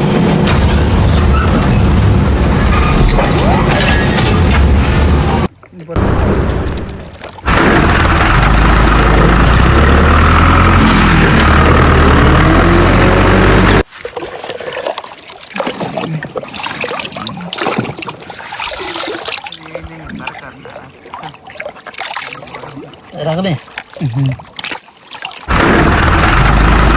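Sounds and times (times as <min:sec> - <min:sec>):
water trickling and dripping: 0:14.4 - 0:25.5.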